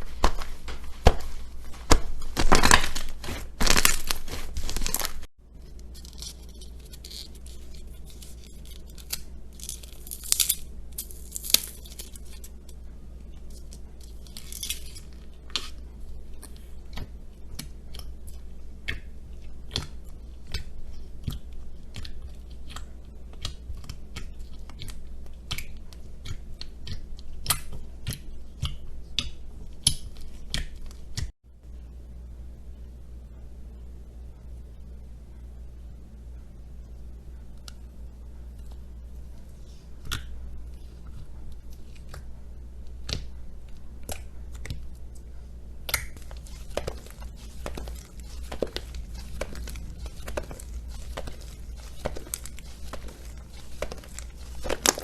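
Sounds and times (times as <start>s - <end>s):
slime crackling and crunching: 0.1s - 12.6s, 45.9s - 55.0s.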